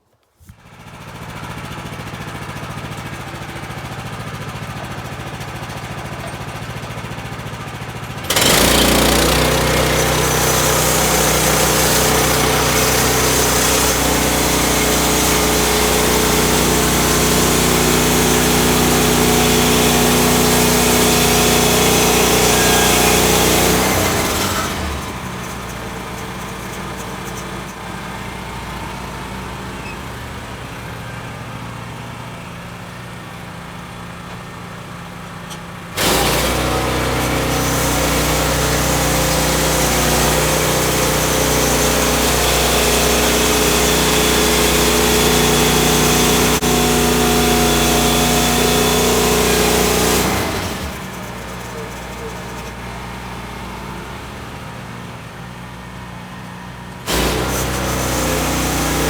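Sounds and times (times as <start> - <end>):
sawmill engine running: 0.5 - 59.0
band saw blade cutting: 8.2 - 27.8, 36.0 - 53.2, 57.1 - 59.0.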